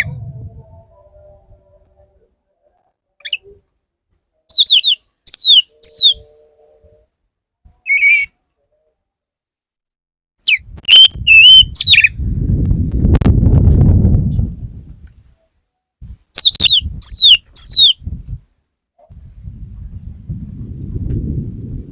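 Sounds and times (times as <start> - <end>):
bird whistling song: 3.2 - 3.6, 4.5 - 6.4, 7.8 - 8.4, 10.4 - 12.1, 16.4 - 18.0.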